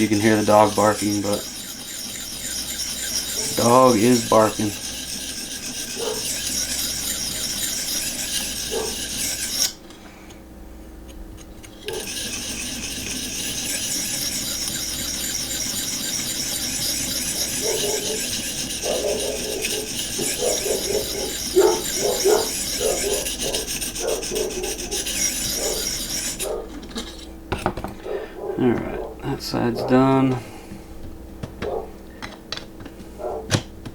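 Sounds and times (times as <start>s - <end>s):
sharpening stone scraping knife: 0.0s - 9.8s, 11.6s - 27.4s.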